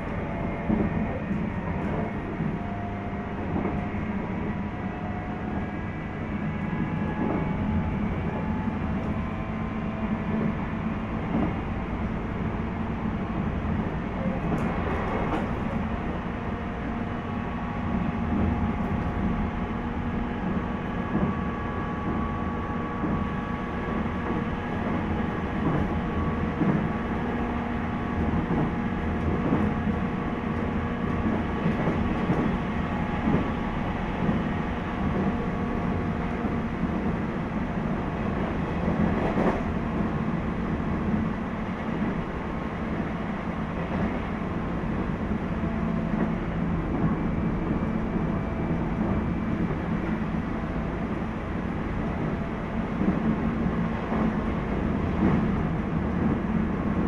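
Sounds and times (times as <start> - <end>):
wheels rumbling on rail: 0.0 - 57.0
train motor hum: 14.2 - 57.0.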